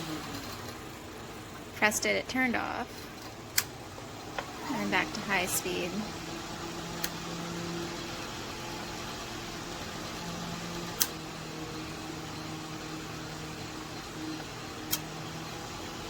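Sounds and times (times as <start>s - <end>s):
table fan running: 0.0s - 16.0s
fan switch click: 11.0s - 11.2s, 14.9s - 15.1s.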